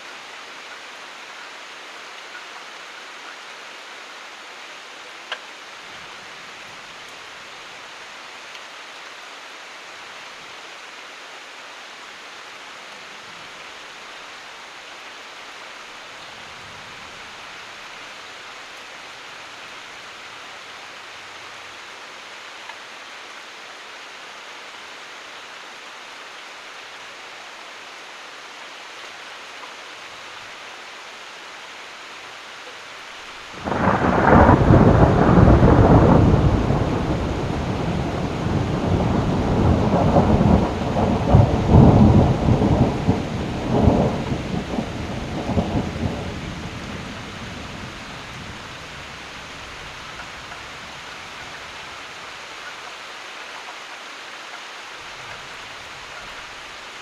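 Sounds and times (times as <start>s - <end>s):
steady rain: 0.0s - 57.0s
thunder rumbling: 33.6s - 51.0s.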